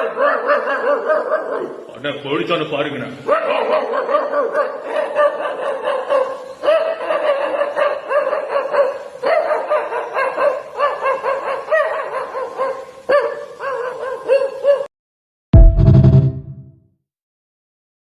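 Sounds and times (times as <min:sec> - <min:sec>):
person imitating barking dogs: 0:03.2 - 0:06.1
loud thump: 0:15.6 - 0:16.7.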